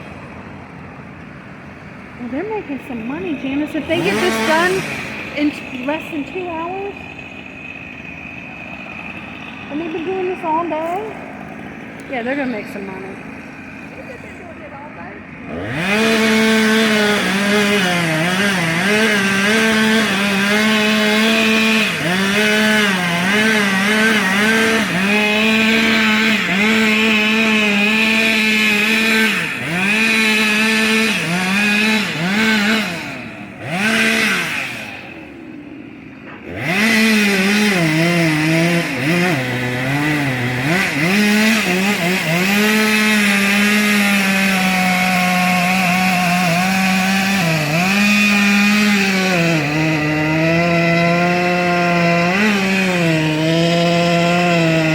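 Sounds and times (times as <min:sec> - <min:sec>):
chainsaw cutting wood: 0:00.0 - 0:54.9.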